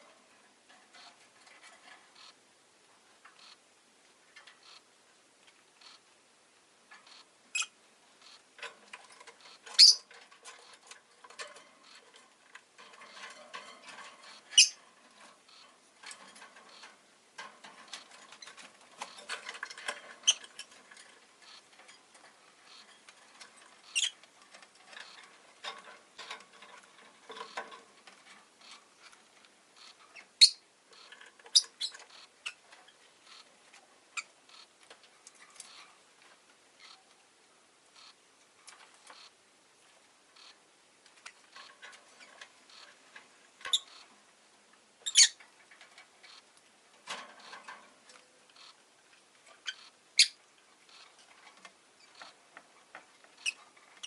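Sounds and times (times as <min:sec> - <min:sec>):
bird chirping: 0:07.1 - 0:08.4, 0:09.4 - 0:10.1, 0:14.2 - 0:14.8, 0:23.8 - 0:24.3, 0:29.8 - 0:33.4, 0:45.0 - 0:45.4, 0:49.6 - 0:50.4
bird clicking and rustling in cage: 0:08.2 - 0:30.3, 0:30.9 - 0:37.2, 0:38.0 - 0:39.3, 0:39.9 - 0:54.0.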